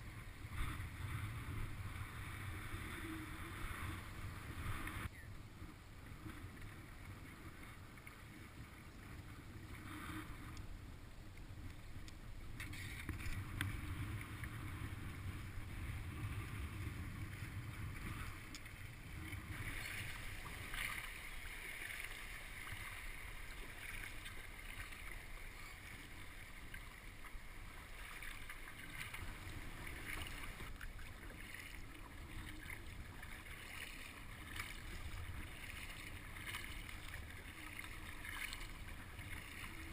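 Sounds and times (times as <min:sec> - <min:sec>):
wind on microphone: 0:00.0 - 0:07.1, 0:12.5 - 0:21.2
water lapping around kayak: 0:00.0 - 0:39.9.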